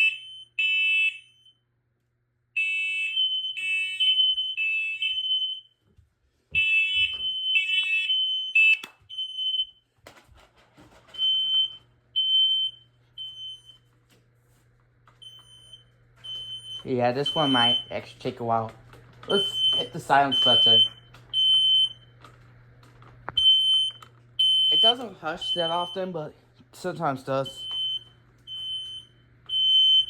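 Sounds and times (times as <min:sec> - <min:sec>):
faint pure smoke alarm beeps: 0:00.0 - 0:01.6, 0:06.5 - 0:09.9, 0:11.2 - 0:13.8, 0:15.2 - 0:18.0, 0:19.3 - 0:22.1, 0:23.4 - 0:26.2, 0:27.5 - 0:30.0
harsh smoke alarm beeps: 0:00.0 - 0:01.6, 0:02.5 - 0:05.8, 0:06.5 - 0:09.9, 0:11.1 - 0:13.9, 0:15.2 - 0:18.4, 0:19.3 - 0:22.2, 0:23.3 - 0:26.3, 0:27.4 - 0:30.0.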